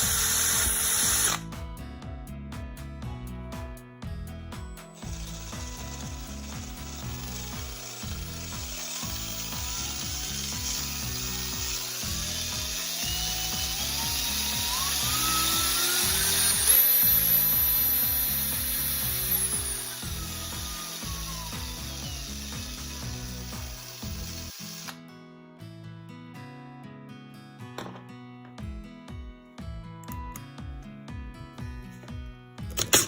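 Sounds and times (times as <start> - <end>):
cordless drill motor whine: 0.0 - 1.4, 5.0 - 25.0.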